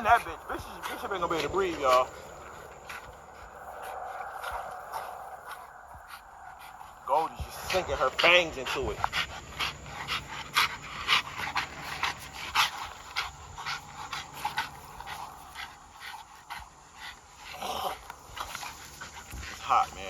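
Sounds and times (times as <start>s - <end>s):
dogs panting: 0.0s - 20.0s.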